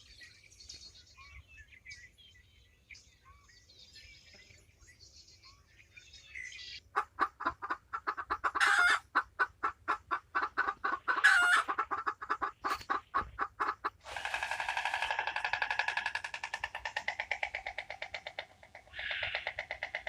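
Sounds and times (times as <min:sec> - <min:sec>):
faint small bird chirps: 0:00.0 - 0:06.8, 0:18.9 - 0:19.6
chickens clucking: 0:06.9 - 0:20.0
chicken squawk: 0:07.0 - 0:16.3, 0:18.8 - 0:20.0.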